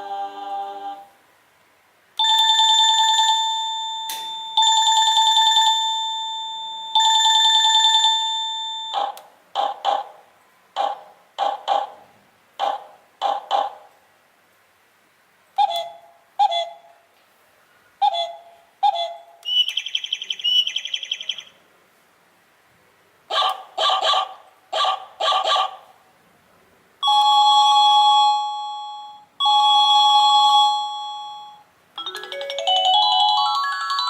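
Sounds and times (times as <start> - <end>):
electronic doorbell chimes: 2.2 - 9.1, 27.0 - 34.0.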